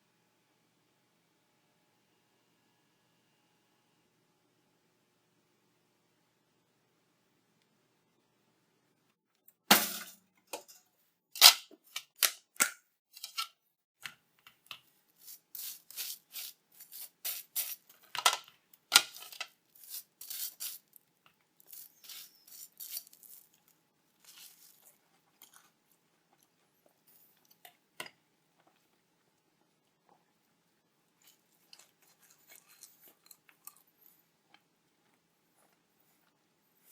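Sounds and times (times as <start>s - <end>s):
sharp clunk: 9.7s - 10.7s
knife spreading butter on toast: 14.7s - 18.2s, 19.0s - 21.0s, 21.6s - 28.8s, 31.2s - 34.1s.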